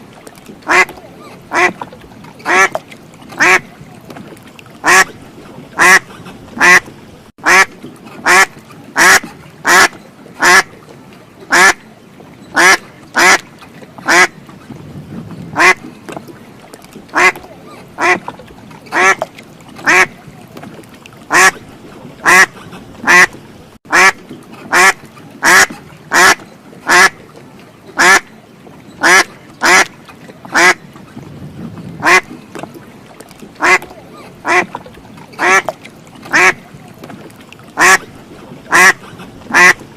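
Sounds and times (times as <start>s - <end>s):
duck quacking: 0.7s - 0.9s, 1.5s - 1.8s, 2.5s - 2.8s, 3.4s - 3.7s, 4.8s - 5.1s, 5.8s - 6.0s, 6.6s - 6.8s, 7.4s - 10.7s, 11.5s - 11.8s, 12.6s - 13.4s, 14.1s - 14.3s, 15.6s - 15.8s, 17.1s - 17.4s, 18.0s - 18.2s, 18.9s - 19.2s, 19.8s - 20.1s, 21.3s - 21.6s, 22.2s - 27.2s, 28.0s - 28.2s, 29.0s - 29.9s, 30.5s - 30.8s, 32.0s - 32.2s, 33.6s - 34.7s, 35.4s - 35.7s, 36.3s - 36.6s, 37.8s - 38.1s, 38.7s - 39.8s.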